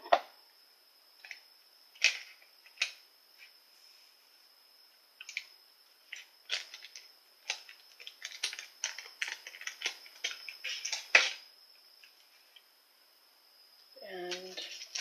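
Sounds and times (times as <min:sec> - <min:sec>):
plastic packet crinkling: 0:06.1 - 0:11.4, 0:14.4 - 0:15.0.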